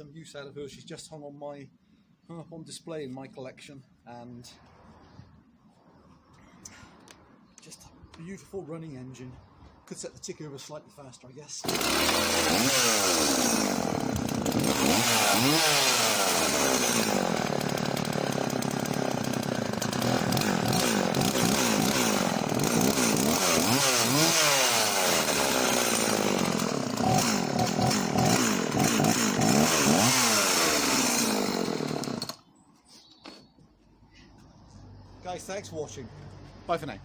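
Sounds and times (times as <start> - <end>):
chainsaw revving: 11.6 - 32.4.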